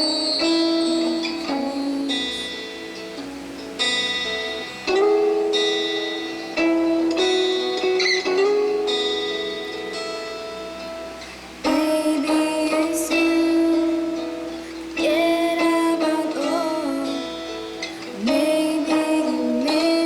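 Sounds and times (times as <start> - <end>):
woman singing a pop ballad: 0.0 - 2.9, 11.6 - 20.0
guitar accompaniment: 0.0 - 20.0.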